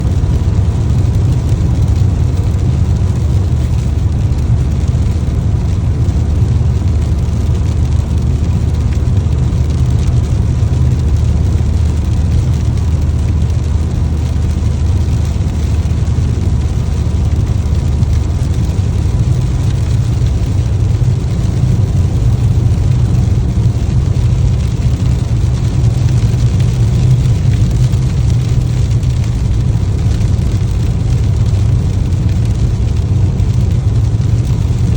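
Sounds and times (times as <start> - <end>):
car engine and road rumble: 0.0 - 34.9.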